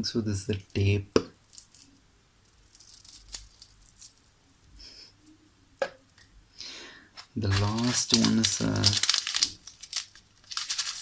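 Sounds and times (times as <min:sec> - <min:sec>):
packaging crinkling and rustling: 0:07.2 - 0:11.0.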